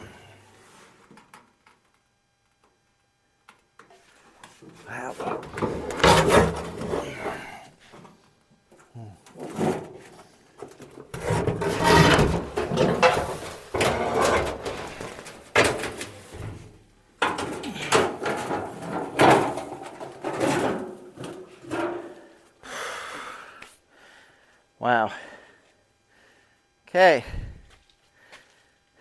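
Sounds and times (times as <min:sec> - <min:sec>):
heavy metal parts scraping and clunking: 0:04.6 - 0:08.1, 0:09.2 - 0:22.4.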